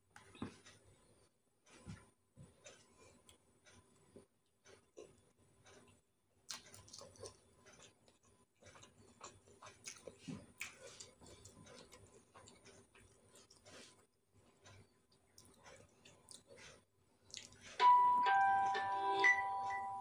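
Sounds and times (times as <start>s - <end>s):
chewing clicks and smacks: 4.7s - 17.8s.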